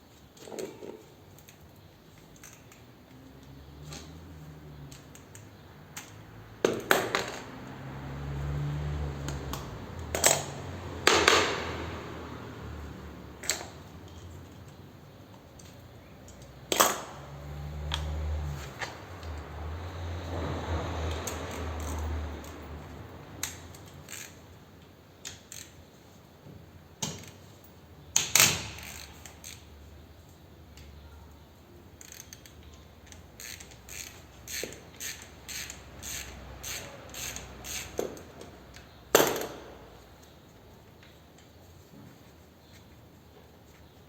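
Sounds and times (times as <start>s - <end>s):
metal clicks of hand tools: 2.2s - 4.2s, 4.8s - 7.5s, 13.4s - 19.5s, 21.1s - 25.8s, 28.1s - 29.7s, 32.0s - 39.6s.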